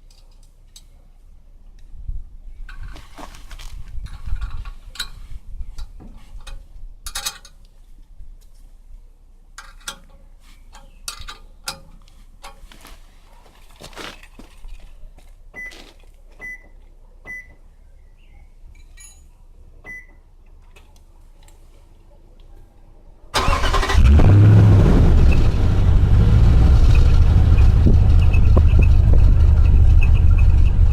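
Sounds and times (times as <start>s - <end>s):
knocks and clatters of handling: 2.7s - 7.8s, 9.6s - 16.6s.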